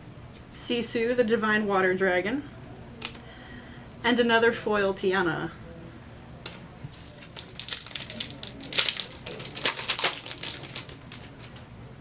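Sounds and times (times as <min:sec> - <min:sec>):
foil wrapper crinkling and tearing: 0:07.0 - 0:11.6.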